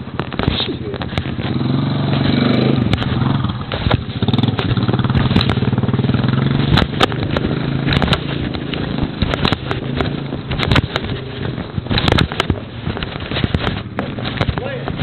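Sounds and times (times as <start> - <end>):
clicks and knocks: 6.6 - 15.0.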